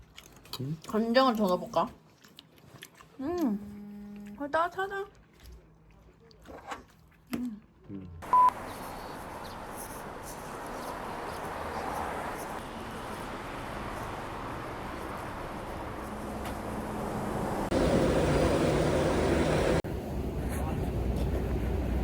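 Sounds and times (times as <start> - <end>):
short electronic beep: 8.3 - 8.6.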